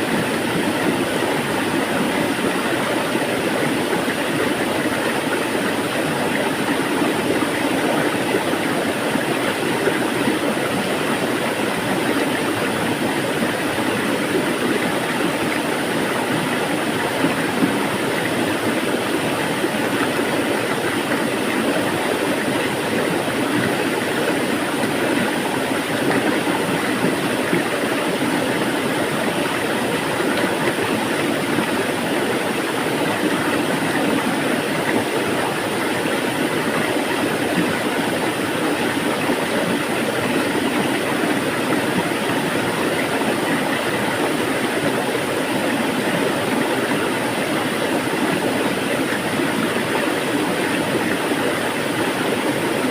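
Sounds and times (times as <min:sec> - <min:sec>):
water rushing: 0:00.0 - 0:52.9.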